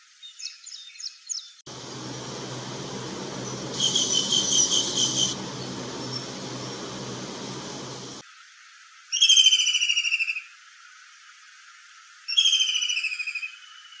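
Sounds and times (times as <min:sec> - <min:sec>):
kingfisher rattling trill: 0:01.8 - 0:08.2.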